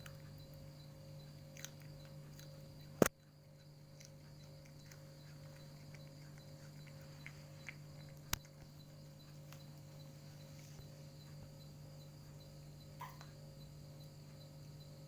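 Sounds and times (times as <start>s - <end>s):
cat chewing crunching clicks: 0.0s - 9.8s
steady low hum: 0.0s - 15.0s.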